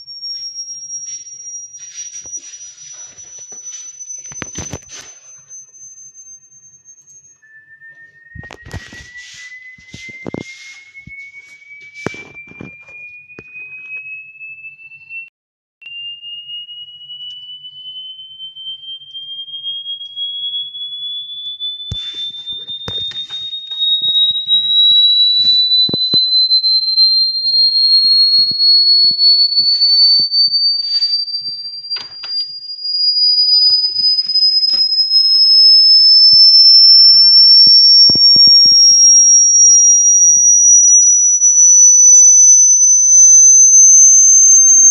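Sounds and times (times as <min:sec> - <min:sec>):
rising electronic tone: 0:34.1 - 0:44.9.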